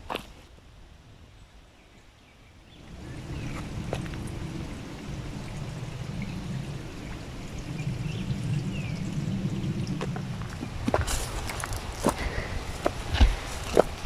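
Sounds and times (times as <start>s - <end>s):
running water: 2.8s - 14.0s.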